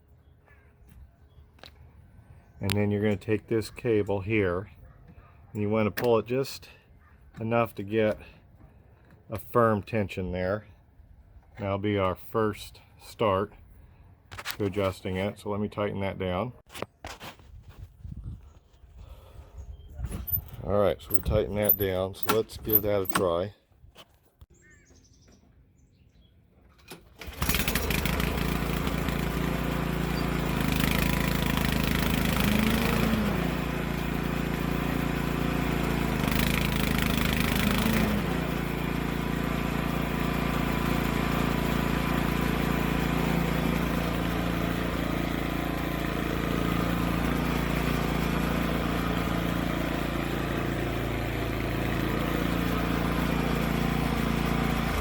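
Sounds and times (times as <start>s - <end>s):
lawn mower engine running: 20.2s - 23.4s, 26.6s - 55.0s.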